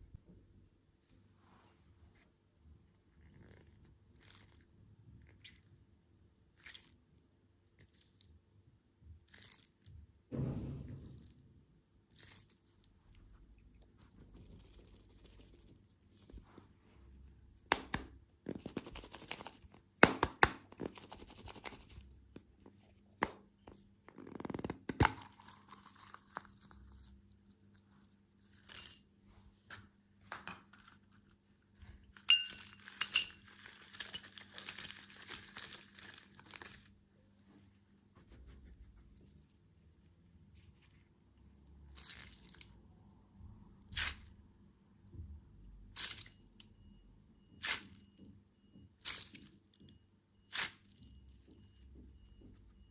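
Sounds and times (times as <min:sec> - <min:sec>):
plastic wrappers tearing and crinkling: 0:32.9 - 0:36.9.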